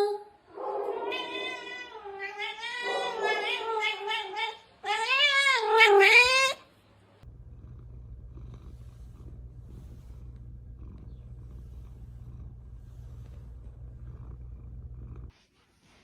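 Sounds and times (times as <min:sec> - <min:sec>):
cat yowling: 0:00.9 - 0:06.6
cat purring: 0:07.2 - 0:15.4.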